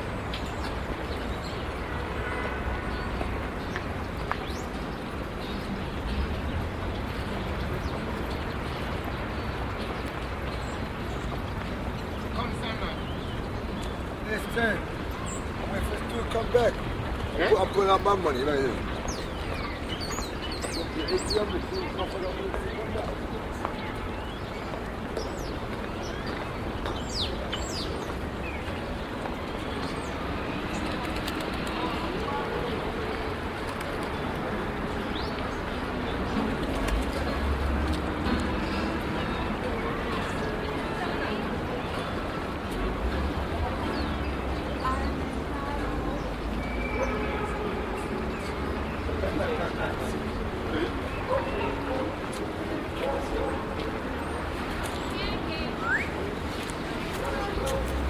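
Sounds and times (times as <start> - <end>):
distant traffic rumble: 0.0 - 58.0
small birds chirping: 18.7 - 32.0.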